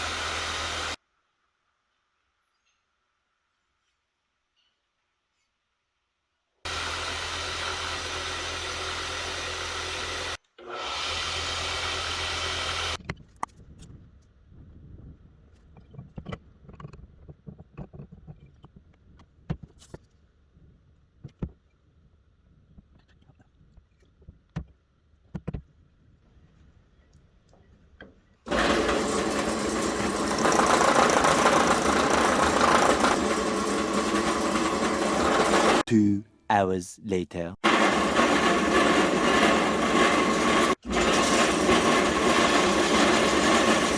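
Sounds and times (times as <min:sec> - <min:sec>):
electric power tool running: 0:00.0 - 0:01.0, 0:06.7 - 0:13.0, 0:28.5 - 0:35.9, 0:37.6 - 0:43.9.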